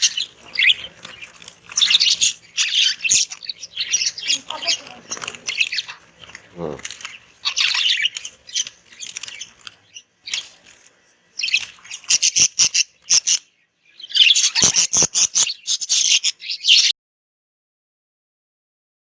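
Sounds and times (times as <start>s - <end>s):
budgerigars chirping and chattering: 0.0s - 16.9s.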